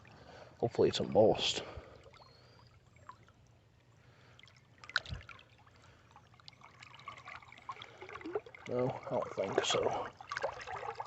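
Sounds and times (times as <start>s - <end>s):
faint water sounds: 0.0s - 11.0s.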